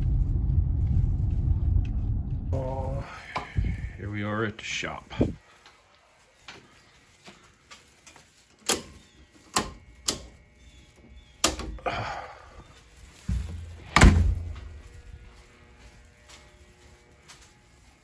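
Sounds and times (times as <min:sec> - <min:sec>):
door clicks and knocks: 0:13.3 - 0:14.6
heavy door slam: 0:13.3 - 0:14.8.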